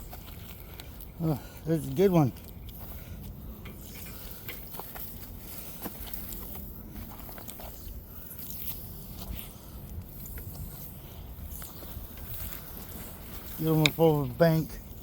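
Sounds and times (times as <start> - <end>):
small crunches and scrapes: 3.7 - 14.6.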